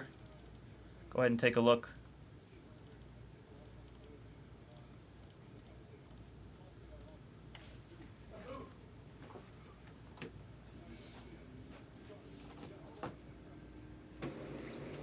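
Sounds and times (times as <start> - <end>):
computer clicks: 0.0 - 0.7, 2.8 - 6.3, 7.0 - 7.6.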